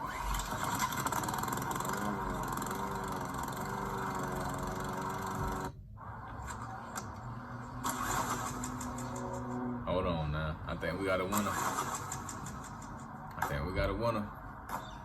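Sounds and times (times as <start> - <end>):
small petrol engine running: 0.0 - 5.8.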